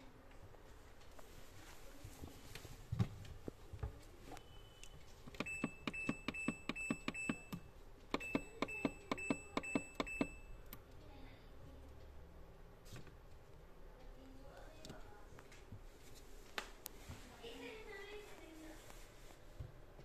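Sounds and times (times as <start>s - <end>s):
short electronic beeps with clicks: 4.4s - 10.7s.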